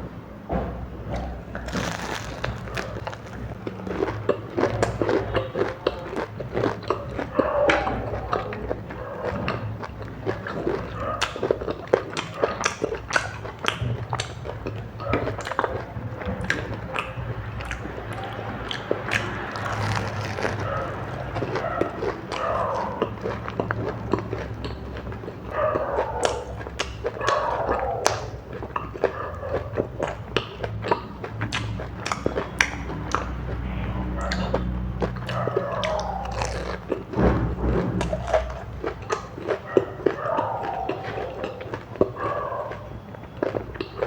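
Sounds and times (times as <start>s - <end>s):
biting and chewing crunches: 1.1s - 44.0s
wet mouth smacks: 30.0s - 33.5s.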